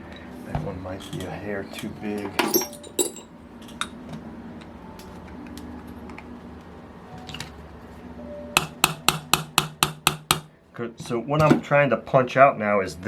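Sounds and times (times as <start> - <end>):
steel tools clinking on metal: 1.8 - 3.3.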